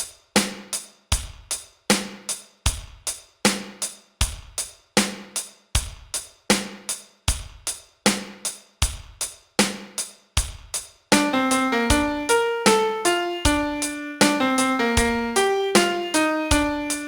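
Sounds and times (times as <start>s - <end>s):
bass drum and snare beat: 0.0s - 12.8s.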